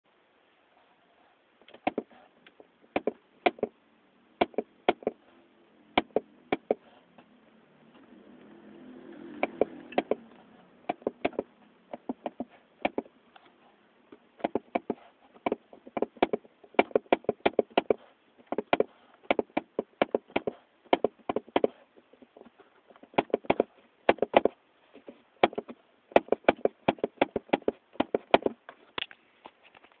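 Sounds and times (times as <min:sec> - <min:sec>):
car trim rattling: 0:10.9 - 0:13.1, 0:14.4 - 0:24.6, 0:25.4 - 0:28.6.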